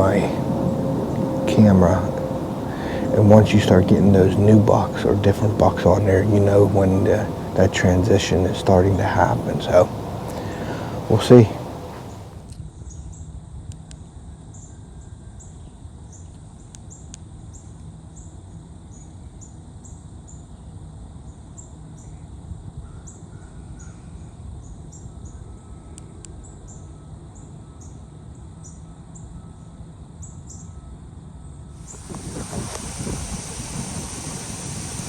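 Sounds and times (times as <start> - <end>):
low wind rumble: 0.0 - 12.4, 31.8 - 35.0.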